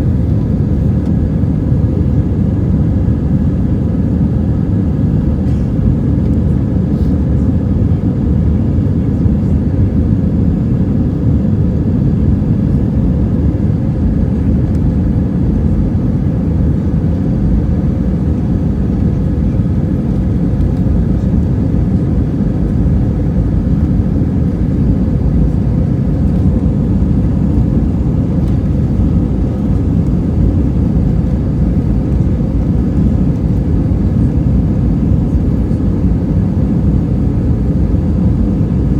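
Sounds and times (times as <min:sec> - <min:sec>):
faint steady whine: 0:00.0 - 0:09.6
jet engines and airflow roar: 0:00.0 - 0:38.9.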